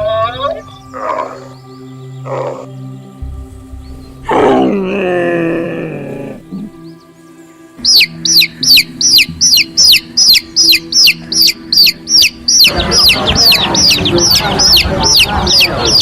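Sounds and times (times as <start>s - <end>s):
chick peeping: 7.8s - 16.0s.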